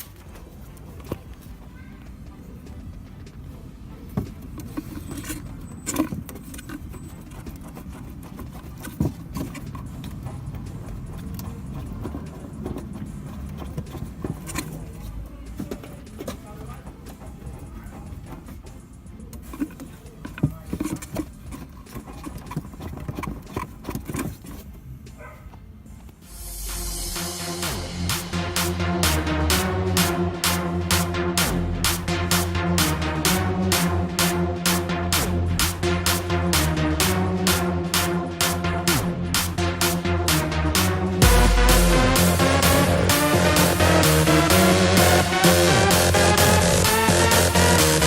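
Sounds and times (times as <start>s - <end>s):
low steady rumble: 26.3s - 45.8s.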